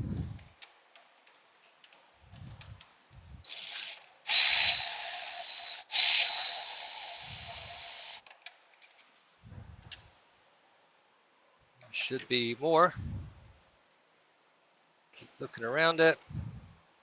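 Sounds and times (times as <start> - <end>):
cordless power tool whining: 3.5 - 8.2.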